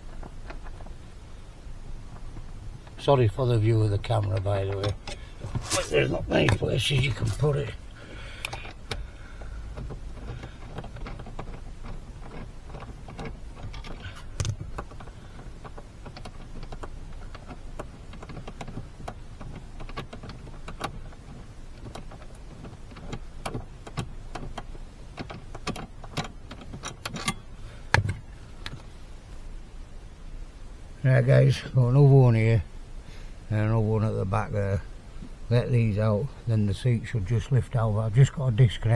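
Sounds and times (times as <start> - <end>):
hand tools clicking on metal bolts: 8.2 - 28.8.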